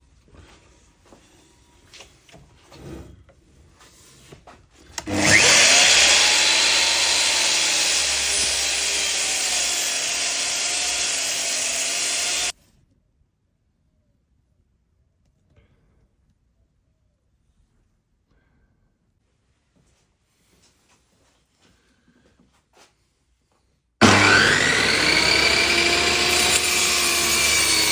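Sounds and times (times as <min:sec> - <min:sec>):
power tool cutting wood: 0:05.0 - 0:12.5, 0:24.0 - 0:27.9.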